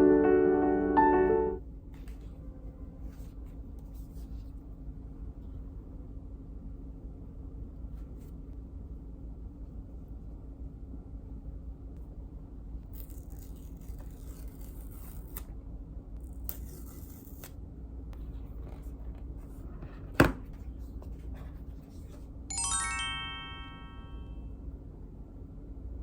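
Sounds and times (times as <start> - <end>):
bright ringing tone: 22.5 - 24.4.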